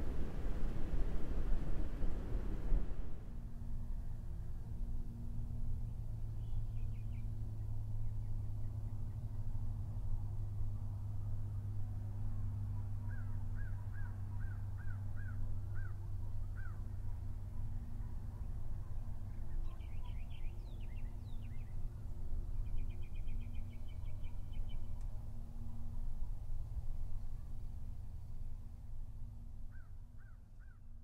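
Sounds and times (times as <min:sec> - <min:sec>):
low hum: 0:00.0 - 0:31.0
wild birds chirping: 0:12.8 - 0:25.0.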